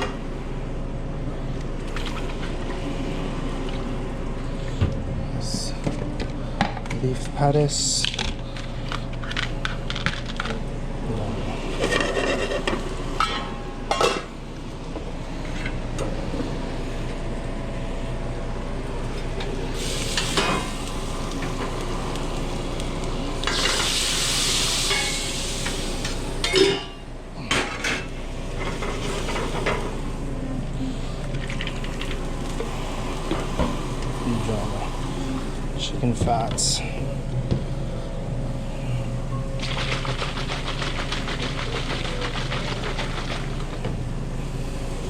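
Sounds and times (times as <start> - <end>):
steady hum: 0.0 - 45.0
loud hiss: 19.8 - 26.4
food sizzling: 19.8 - 26.5
pans and utensils clattering: 26.4 - 30.0.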